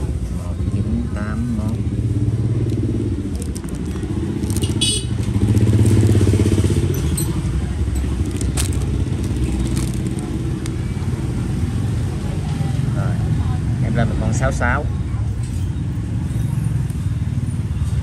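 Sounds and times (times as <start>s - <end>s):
motorbike engine running: 1.5s - 12.2s.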